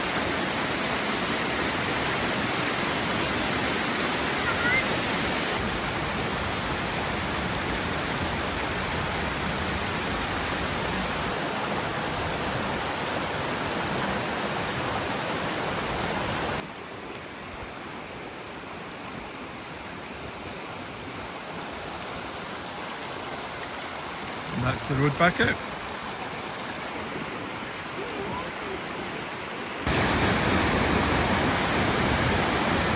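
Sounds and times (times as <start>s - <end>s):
waterfall rushing: 0.0s - 9.2s, 22.7s - 32.9s.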